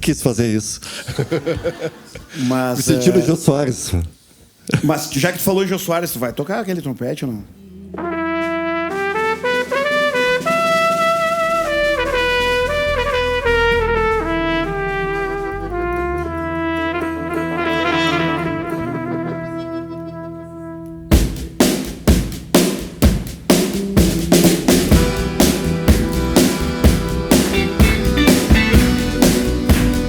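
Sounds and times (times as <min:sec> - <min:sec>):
soft low accompaniment: 0:07.5 - 0:22.4
trumpet playing slow melody: 0:07.9 - 0:21.6, 0:24.9 - 0:30.0
rock drums: 0:21.1 - 0:30.0.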